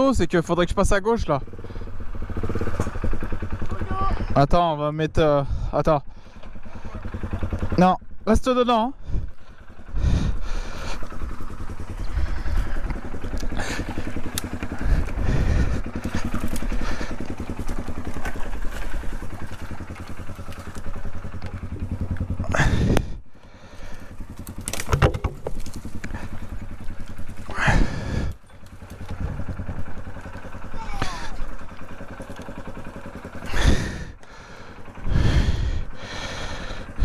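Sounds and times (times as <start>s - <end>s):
off-road vehicle engine revving: 0.0s - 37.0s
low thumps: 24.8s - 26.2s.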